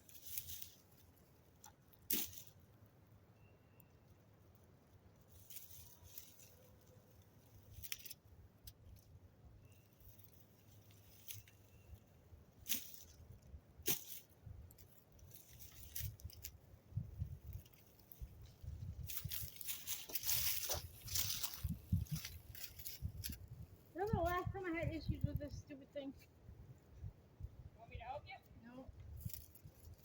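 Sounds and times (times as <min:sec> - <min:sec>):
faint rustles: 0:05.1 - 0:08.2, 0:08.8 - 0:26.4.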